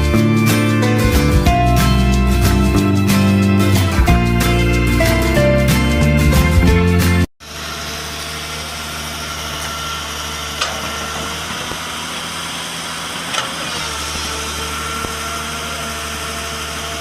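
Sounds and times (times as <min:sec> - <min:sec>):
background music: 0:00.0 - 0:07.3
engine running: 0:00.0 - 0:17.0.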